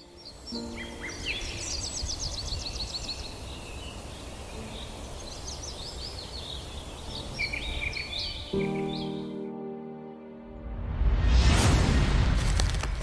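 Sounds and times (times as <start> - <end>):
songbirds trilling and chirping: 0.0 - 9.4.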